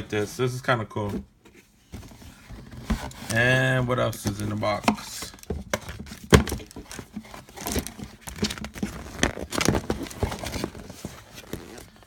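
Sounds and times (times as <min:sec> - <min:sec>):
packaging crinkling and rustling: 0:02.7 - 0:12.0.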